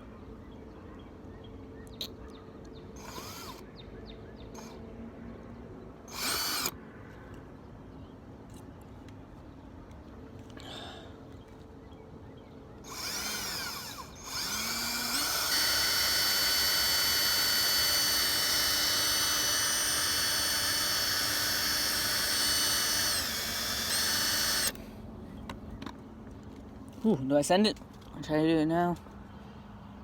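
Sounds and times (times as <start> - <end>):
small electric drill whirring: 3.0 - 3.6, 6.1 - 6.8, 12.9 - 24.8.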